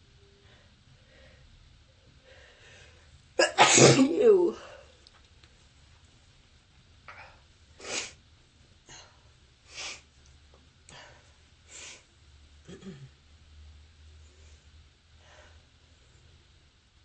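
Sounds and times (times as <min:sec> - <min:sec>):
person sneezing: 0:03.4 - 0:04.7.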